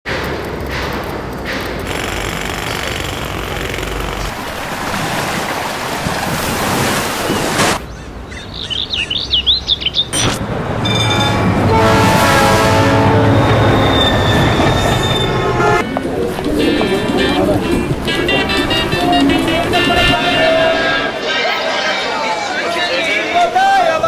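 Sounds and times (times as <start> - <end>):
bird-like chirping: 7.8 - 11.2
train wheels squealing: 10.8 - 11.8, 13.3 - 15.8.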